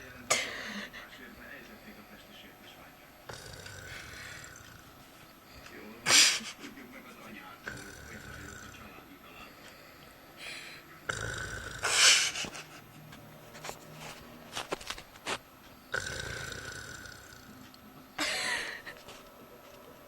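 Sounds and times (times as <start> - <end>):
person snoring: 3.3 - 5.0, 7.6 - 9.0, 10.4 - 12.7, 15.9 - 17.6.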